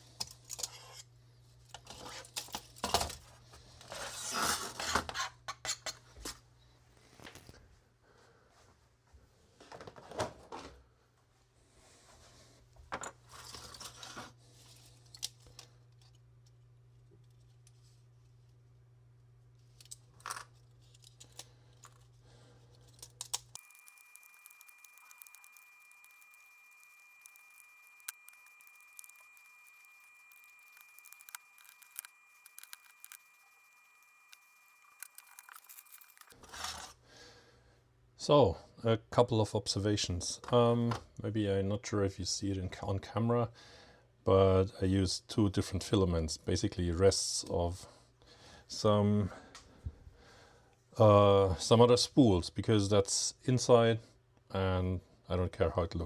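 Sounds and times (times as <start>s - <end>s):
plastic parts clicking and rustling: 19.7s - 37.0s.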